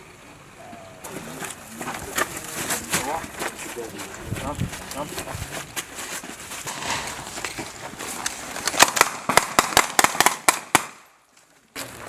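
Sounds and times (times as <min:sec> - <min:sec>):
outdoor noise: 0:00.0 - 0:12.0
rapid gunshots: 0:08.7 - 0:11.0.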